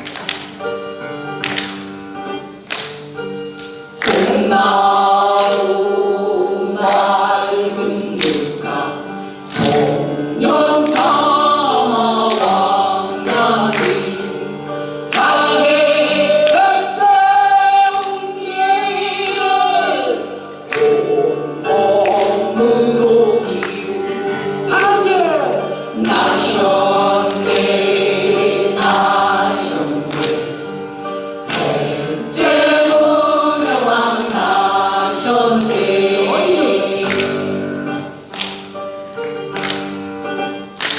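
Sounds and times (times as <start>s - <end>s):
group singing: 4.0s - 38.3s.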